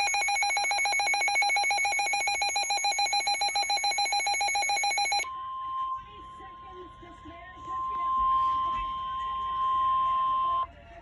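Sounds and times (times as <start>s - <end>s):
rapidly pulsing electronic alarm beep: 0.0s - 5.3s.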